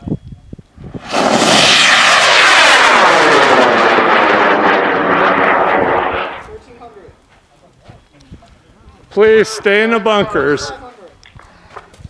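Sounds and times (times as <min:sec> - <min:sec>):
rocket motor roaring: 0:00.9 - 0:06.7.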